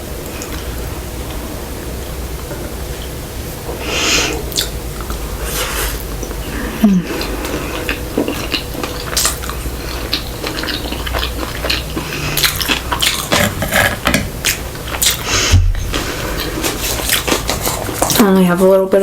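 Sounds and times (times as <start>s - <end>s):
chewing mouth sounds: 4.3s - 18.3s.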